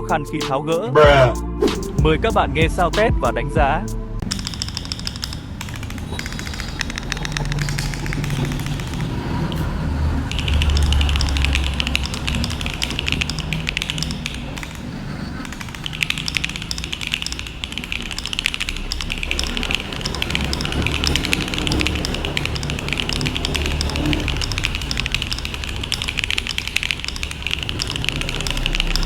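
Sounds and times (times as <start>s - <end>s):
low rumble: 0.0s - 4.4s
mechanical keyboard typing: 4.2s - 29.0s.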